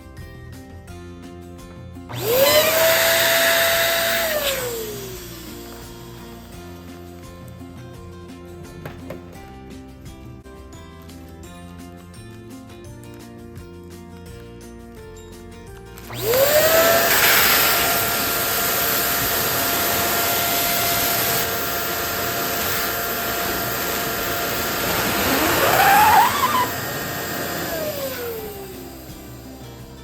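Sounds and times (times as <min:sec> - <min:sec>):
balloon inflator motor humming: 0:02.1 - 0:07.2, 0:16.0 - 0:30.0
rising squeal: 0:24.8 - 0:28.7.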